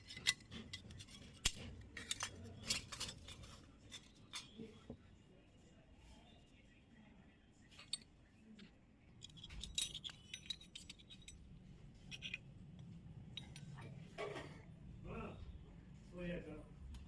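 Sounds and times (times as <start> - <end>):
toy kitchen pieces clicking: 0.0 - 4.7, 9.2 - 11.4.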